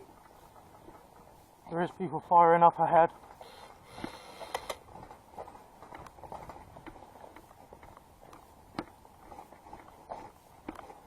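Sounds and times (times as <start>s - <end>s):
footsteps through undergrowth: 4.8s - 11.0s.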